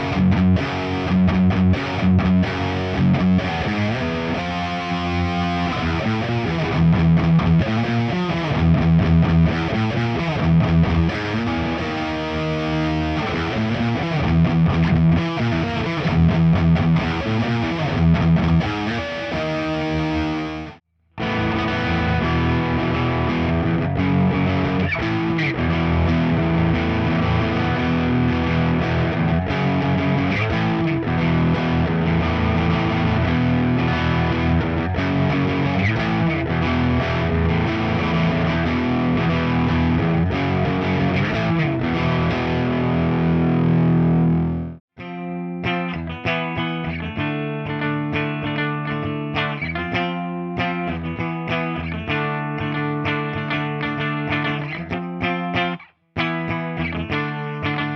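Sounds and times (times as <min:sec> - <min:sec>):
distorted electric guitar riffing: 0:00.0 - 0:57.9.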